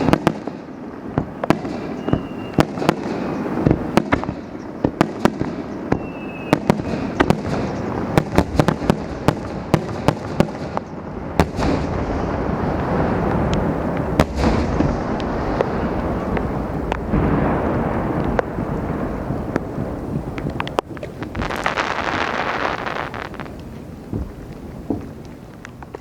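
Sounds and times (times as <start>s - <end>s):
firework whistle: 0.0s - 0.2s, 1.3s - 3.7s, 5.9s - 7.3s, 21.3s - 23.5s
fireworks bursting: 0.0s - 25.3s.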